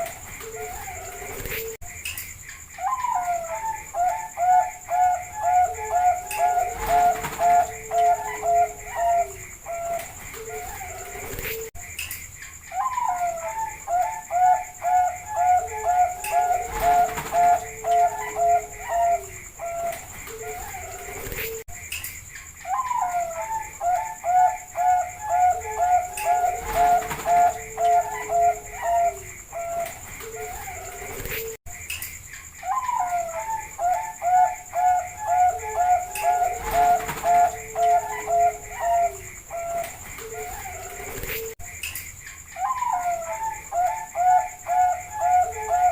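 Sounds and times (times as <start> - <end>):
dove cooing: 0.0 - 1.8, 2.8 - 11.7, 12.7 - 21.6, 22.7 - 31.6, 32.6 - 41.6, 42.6 - 45.9.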